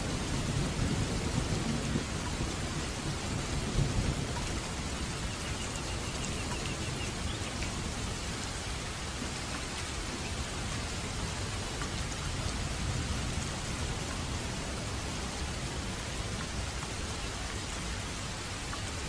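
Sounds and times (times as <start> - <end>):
low thunder rumble: 0.0 - 8.4
steady rain hissing: 0.0 - 19.0.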